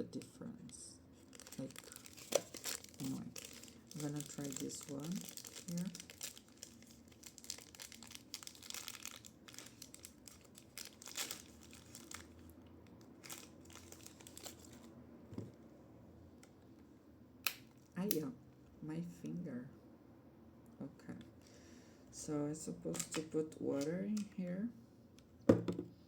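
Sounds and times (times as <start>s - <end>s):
packaging crinkling and tearing: 1.2s - 14.9s.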